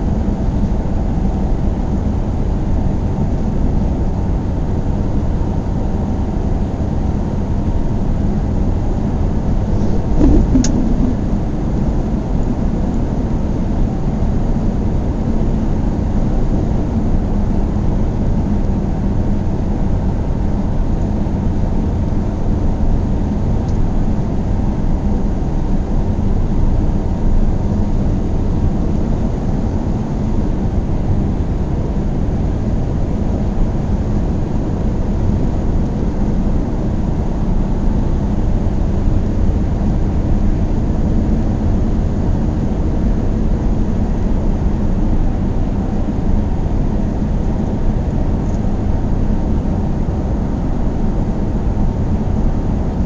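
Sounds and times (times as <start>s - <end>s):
car engine and road noise: 9.6s - 12.7s.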